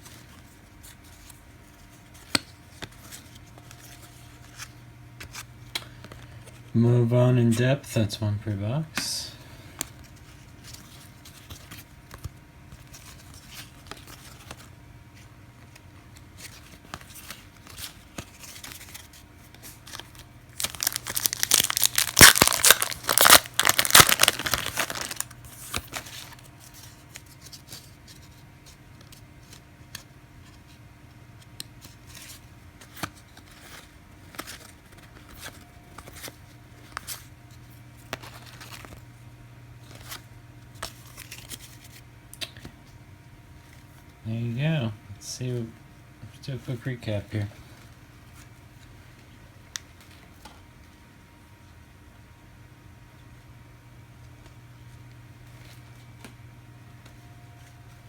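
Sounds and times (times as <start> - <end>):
wrapper tearing and crinkling: 19.8 - 26.4.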